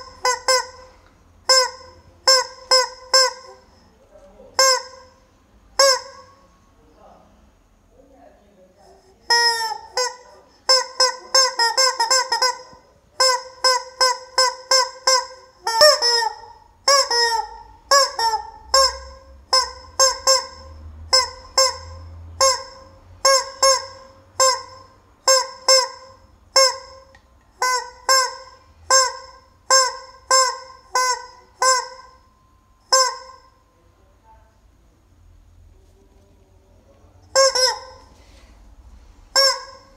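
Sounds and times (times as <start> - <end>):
rubber chicken toy squawking: 0.0 - 3.8, 4.6 - 5.2, 5.8 - 6.4, 9.2 - 32.2, 32.9 - 33.6, 37.3 - 38.2, 39.3 - 39.9.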